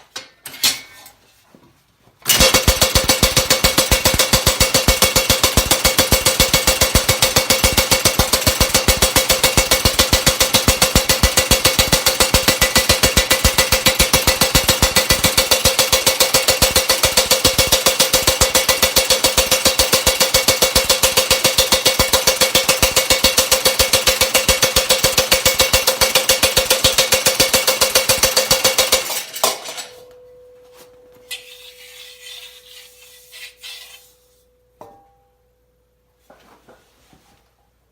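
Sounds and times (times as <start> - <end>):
power hammer pounding sheet steel: 2.3 - 29.8.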